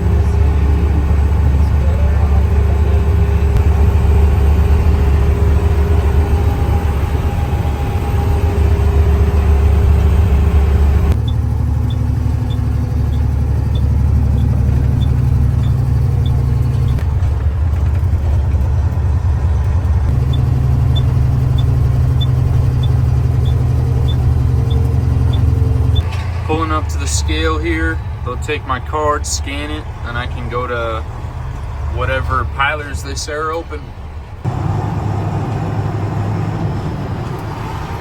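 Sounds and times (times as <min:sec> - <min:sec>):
truck engine humming: 0:00.0 - 0:38.0
light ticking: 0:11.1 - 0:26.1.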